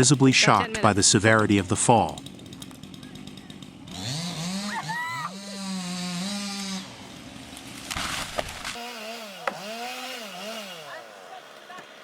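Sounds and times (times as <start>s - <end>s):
chainsaw running: 0.0s - 12.0s
wood snapping and crashing: 7.4s - 9.8s.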